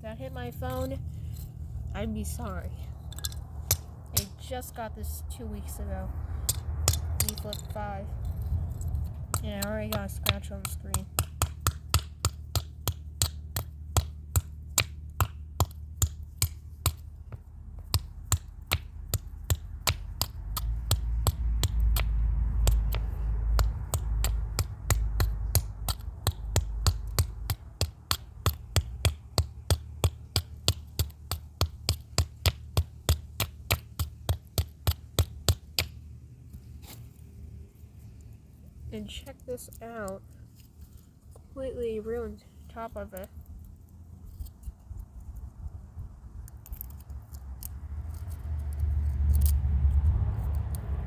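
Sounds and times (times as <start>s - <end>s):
low hum: 0.0s - 32.1s.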